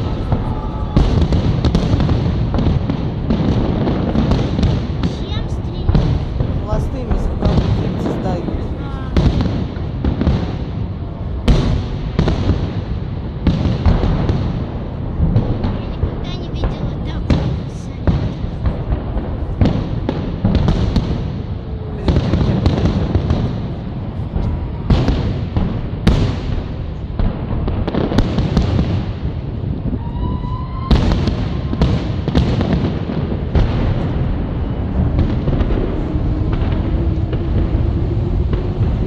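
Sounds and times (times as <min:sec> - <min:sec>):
rising firework whistle: 0:00.0 - 0:04.4, 0:29.7 - 0:39.0
low rumble: 0:00.0 - 0:04.7, 0:33.3 - 0:39.0
fireworks bangs: 0:00.0 - 0:39.0.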